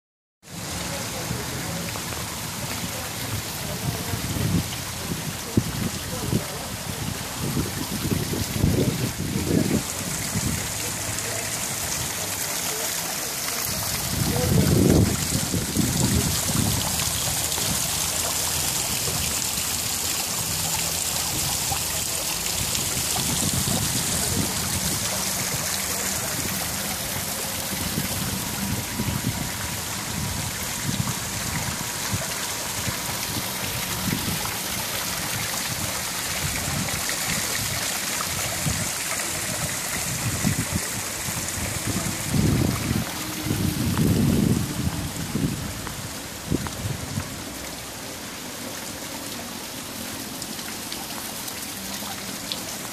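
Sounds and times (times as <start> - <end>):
water splashing down waterfall: 0.4 - 52.9.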